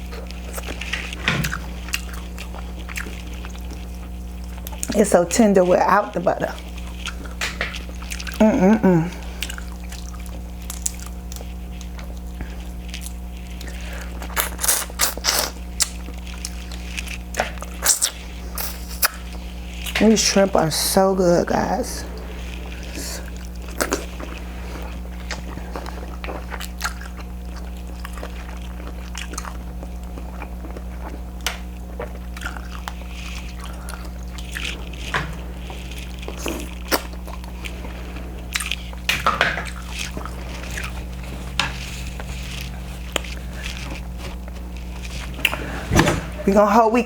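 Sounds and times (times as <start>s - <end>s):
wet chewing and mouth smacking: 0.0s - 20.6s, 22.1s - 45.7s
steady low hum: 0.0s - 47.0s
small clicks and crunches: 0.1s - 5.0s, 22.1s - 45.8s.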